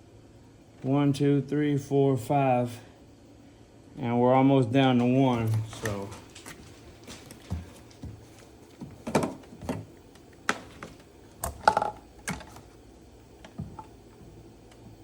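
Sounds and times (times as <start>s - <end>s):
plastic bottles clicking and knocking: 9.0s - 12.7s.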